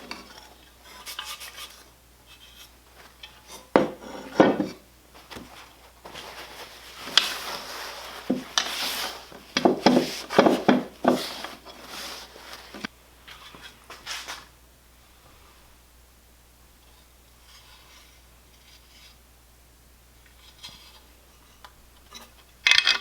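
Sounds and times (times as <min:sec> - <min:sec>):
knocks and clatter of metal parts: 0:08.2 - 0:11.8, 0:22.1 - 0:23.0.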